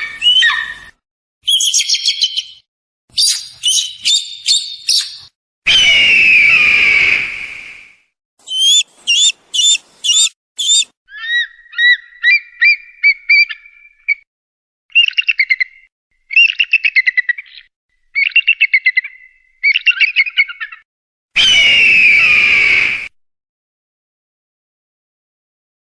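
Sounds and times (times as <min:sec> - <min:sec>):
eagle chirping and chattering: 0:01.5 - 0:02.6, 0:03.2 - 0:05.3, 0:08.4 - 0:13.8
eagle harsh screech: 0:08.5 - 0:10.9.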